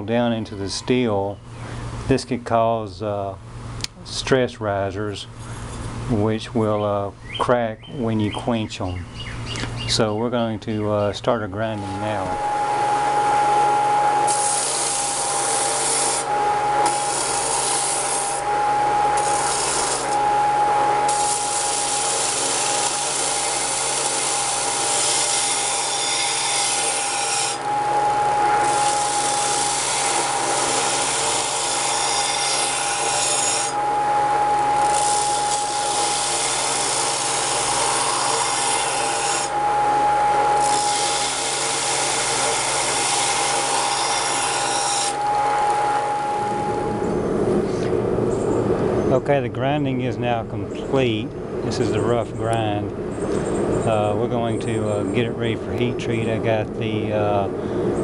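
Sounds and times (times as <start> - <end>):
belt grinder whining: 11.7 - 47.2.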